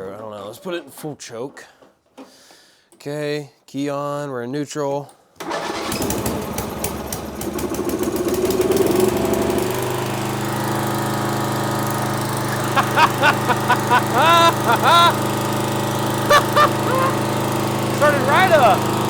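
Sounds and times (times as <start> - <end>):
mower engine cranking and idling: 5.4 - 19.0.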